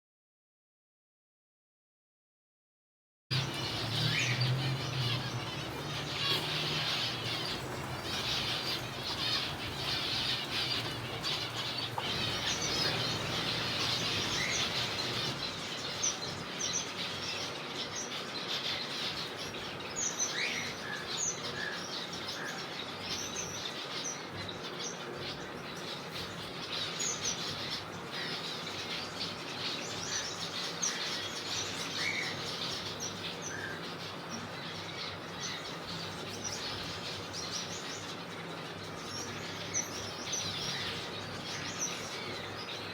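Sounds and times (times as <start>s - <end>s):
finches calling and chattering: 3.3s - 42.9s
wings fluttering: 4.7s - 16.0s.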